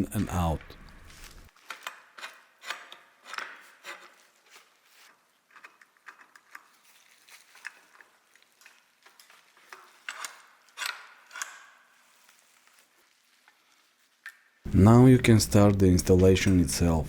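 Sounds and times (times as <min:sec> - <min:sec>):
metal clicks and scrapes: 0:00.9 - 0:06.9, 0:07.6 - 0:11.8.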